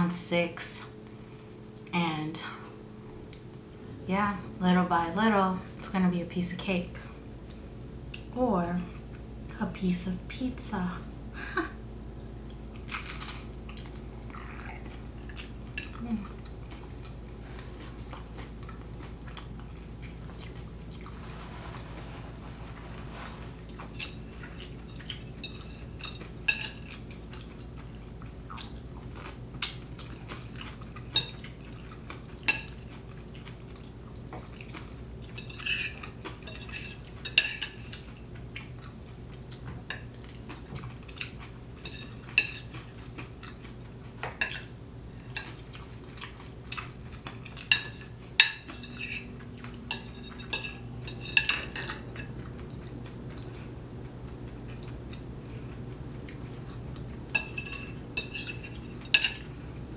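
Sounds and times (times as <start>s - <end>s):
steady low hum: 0.0s - 33.2s, 41.0s - 59.9s
cutlery clinking on a plate: 47.6s - 52.3s, 57.3s - 59.5s.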